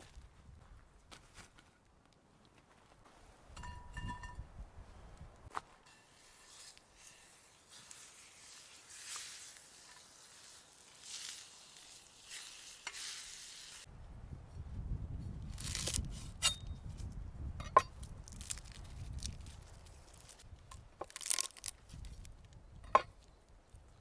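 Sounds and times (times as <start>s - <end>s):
steady hiss: 5.9s - 13.9s
wood cracking and snapping: 18.2s - 20.4s, 21.0s - 22.6s.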